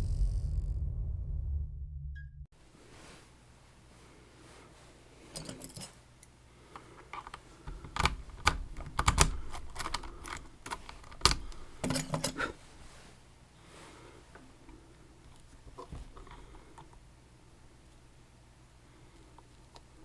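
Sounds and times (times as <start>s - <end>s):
metallic clicks and rattles: 7.2s - 12.4s.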